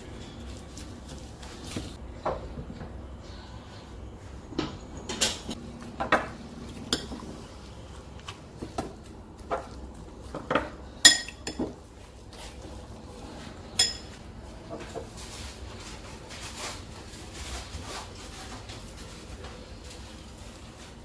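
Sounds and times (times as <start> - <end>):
metal utensils clinking on dishes: 11.0 - 11.8, 13.7 - 14.2.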